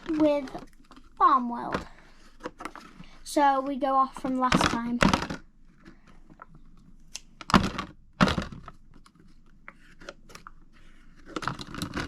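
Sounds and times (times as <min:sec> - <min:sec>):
packaging rustling: 0:00.0 - 0:03.2, 0:07.4 - 0:12.0.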